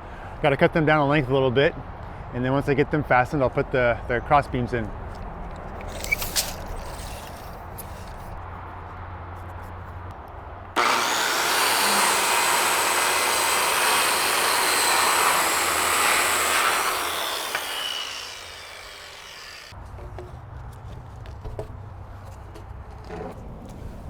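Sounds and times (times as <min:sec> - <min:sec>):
power saw cutting wood: 0:10.8 - 0:19.8.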